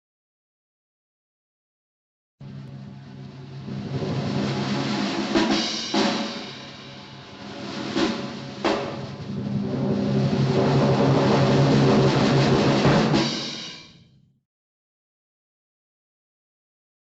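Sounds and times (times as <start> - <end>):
sustained drum sound: 2.4 - 14.4
sharp drum hits: 3.6 - 14.0.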